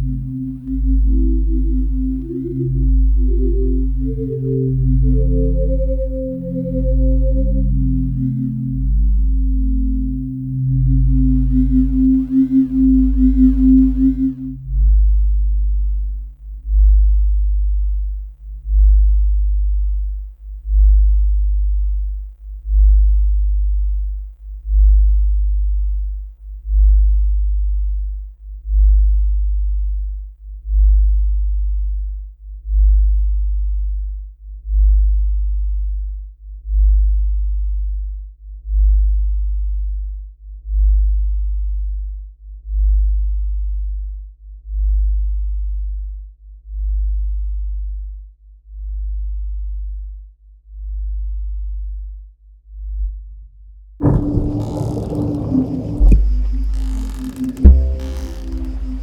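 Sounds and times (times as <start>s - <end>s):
higher steady tones: 0.0s - 10.2s
deep electronic tone pulsing: 0.0s - 15.3s, 54.0s - 59.0s.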